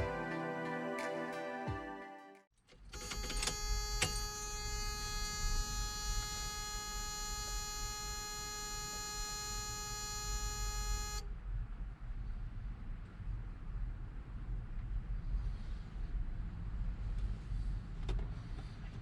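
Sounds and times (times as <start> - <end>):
high-pitched electronic buzzing: 3.0 - 11.2.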